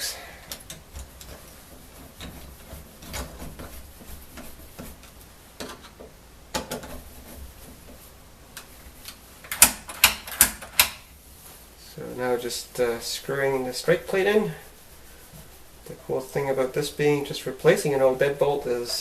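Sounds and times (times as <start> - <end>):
metal deadbolt parts clicking: 9.5 - 11.0.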